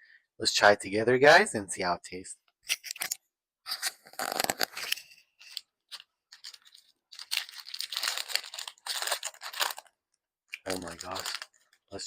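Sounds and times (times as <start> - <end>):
plastic wrapper crinkling and tearing: 2.7 - 12.0.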